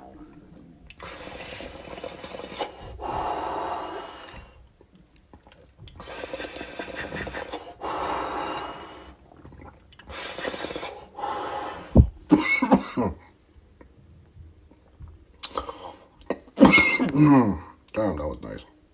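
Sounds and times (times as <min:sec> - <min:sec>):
person exhaling smoke: 0:01.0 - 0:04.6, 0:06.0 - 0:09.2, 0:10.1 - 0:12.7.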